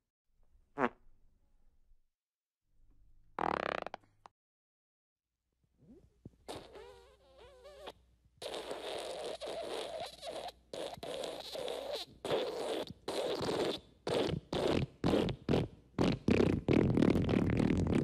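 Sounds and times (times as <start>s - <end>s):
farting: 0.8s - 1.0s, 3.4s - 4.1s, 5.8s - 18.0s.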